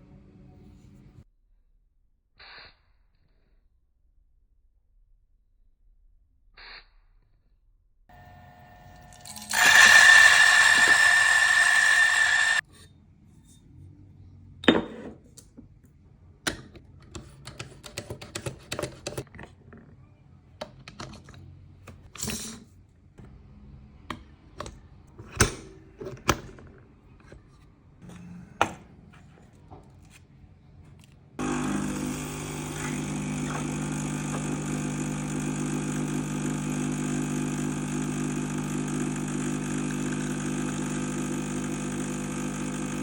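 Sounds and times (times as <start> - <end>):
motor whining: 8.1 - 12.6, 31.4 - 43.0.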